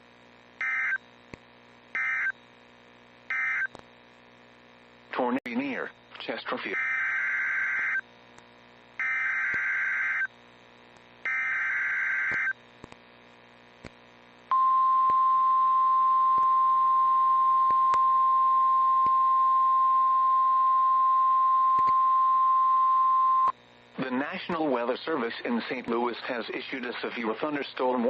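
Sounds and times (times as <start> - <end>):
steady warning alarm tone: 2.0 - 2.3, 3.3 - 3.7, 9.0 - 10.3, 11.3 - 12.5.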